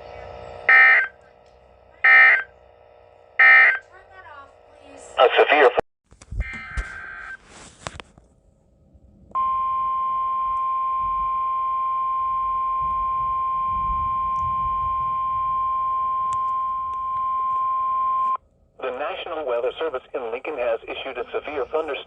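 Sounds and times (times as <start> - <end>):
buzzing two-tone data burst: 0.1 - 1.2, 2.0 - 3.8
shrill steady alarm tone: 0.6 - 1.3, 1.9 - 5.1, 9.4 - 18.4.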